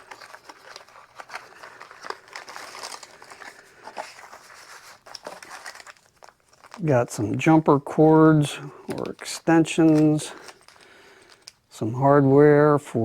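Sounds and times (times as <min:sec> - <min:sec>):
small clicks and rustles: 0:00.0 - 0:06.8, 0:09.8 - 0:11.7
plastic packaging crinkling: 0:00.0 - 0:07.5, 0:08.8 - 0:11.7.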